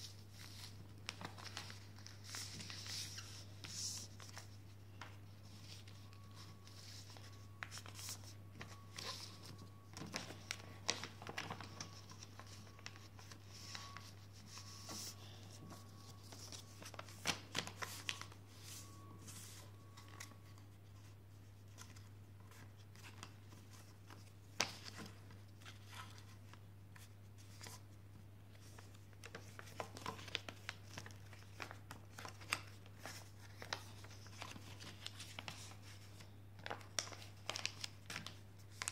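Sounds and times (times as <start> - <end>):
paper crinkling and rustling: 0.0 - 38.9.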